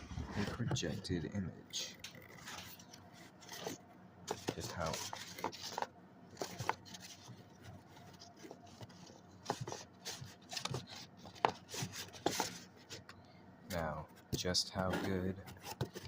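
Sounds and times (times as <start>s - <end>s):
paper and cardboard rustling: 0.0s - 13.1s, 14.2s - 16.0s.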